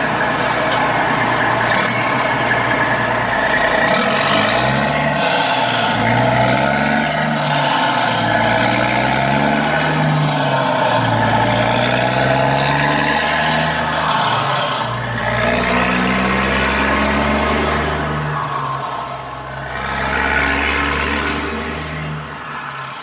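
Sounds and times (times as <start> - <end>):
semi truck engine running: 0.0 - 23.0.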